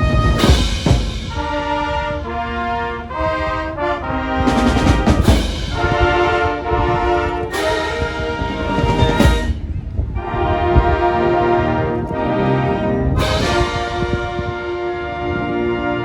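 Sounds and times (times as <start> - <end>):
drum and cymbal hits: 0.0 - 2.8, 4.5 - 6.6, 7.5 - 9.9
brass sustained chords: 0.0 - 16.0
marching band playing: 0.0 - 16.0.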